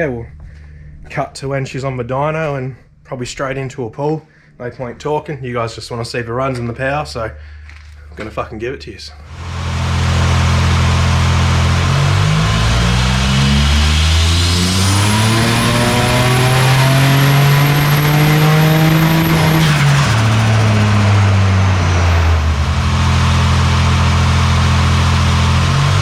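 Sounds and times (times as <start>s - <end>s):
car engine revving: 9.3s - 26.0s.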